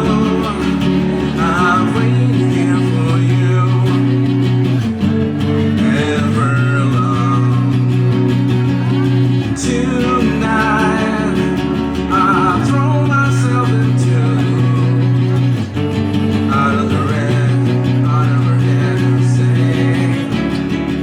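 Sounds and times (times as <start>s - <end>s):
guitar-backed song with singing: 0.0s - 21.0s.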